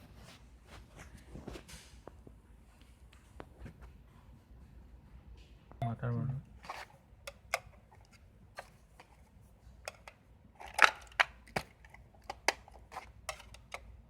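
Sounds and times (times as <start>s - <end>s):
small objects clicking and knocking: 9.9s - 14.0s.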